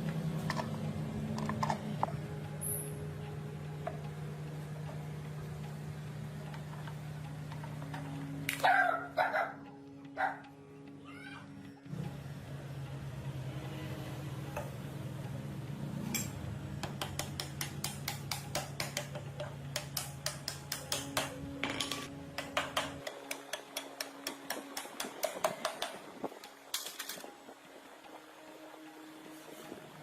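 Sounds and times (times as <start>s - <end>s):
low motor hum: 0.0s - 17.1s.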